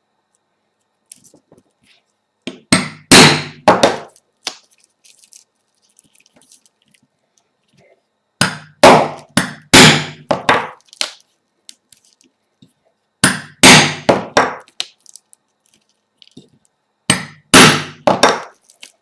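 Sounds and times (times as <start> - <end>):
hammer striking metal punch: 2.5 - 4.1, 8.4 - 10.7, 13.2 - 14.6, 17.1 - 18.5.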